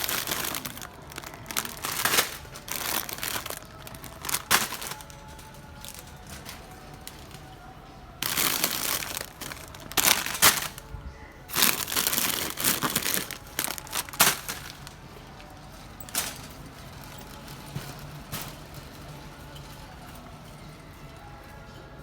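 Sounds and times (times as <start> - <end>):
sharp plastic cracks: 0.0 - 5.2, 8.2 - 10.8, 11.5 - 15.0
plastic packaging crinkling: 0.0 - 7.6, 8.2 - 10.9, 11.5 - 17.8.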